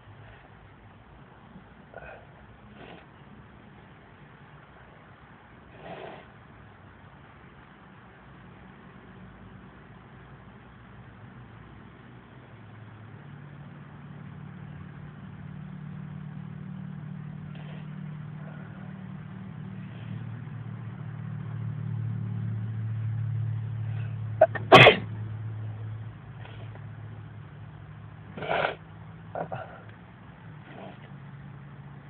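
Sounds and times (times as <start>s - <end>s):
car engine hum: 0.0s - 32.0s
man sneezing: 24.4s - 25.1s.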